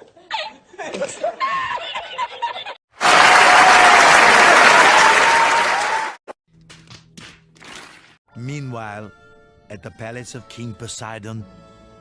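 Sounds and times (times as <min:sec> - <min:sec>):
crowd applause: 0:03.0 - 0:06.2.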